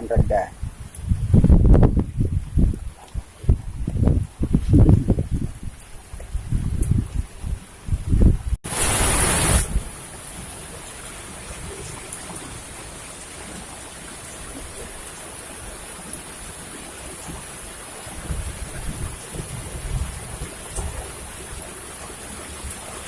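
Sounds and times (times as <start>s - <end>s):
wind buffeting microphone: 0.0s - 10.5s, 18.0s - 23.0s
rain hissing: 8.2s - 23.0s.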